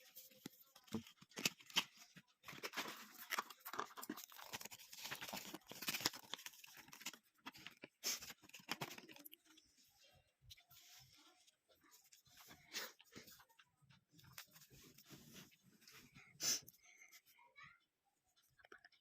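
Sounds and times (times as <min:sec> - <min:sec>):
packaging tearing and crinkling: 0:02.5 - 0:07.6.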